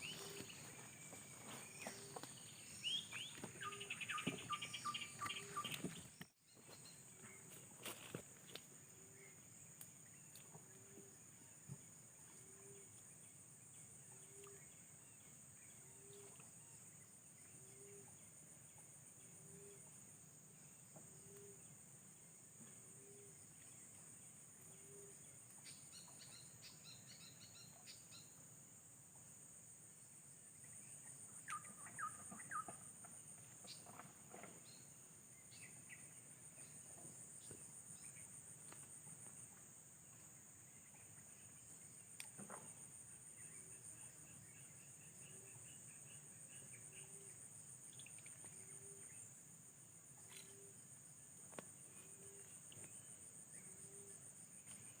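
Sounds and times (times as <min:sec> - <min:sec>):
bird chirps: 0:00.0 - 0:07.5, 0:31.3 - 0:32.9
insect drone: 0:00.0 - 0:55.0.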